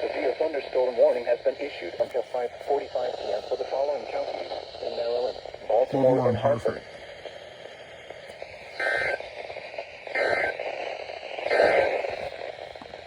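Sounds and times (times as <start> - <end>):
radio static hiss: 0.0 - 13.0
two-tone digital squawks: 8.8 - 9.2, 10.2 - 10.6.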